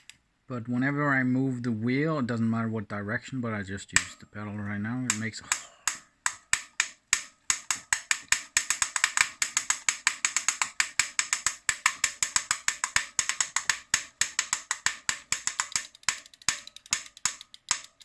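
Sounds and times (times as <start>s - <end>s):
hub motor clicking: 5.0s - 18.0s.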